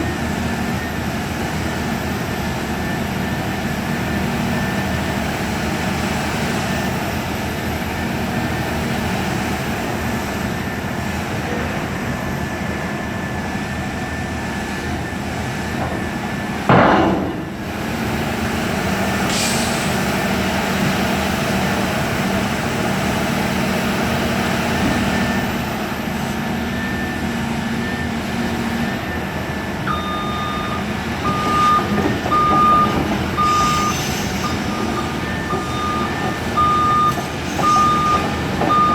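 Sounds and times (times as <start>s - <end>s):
diesel engine running: 0.0s - 38.9s
loud hiss burst: 19.3s - 20.2s
travel alarm beeping: 28.8s - 38.9s.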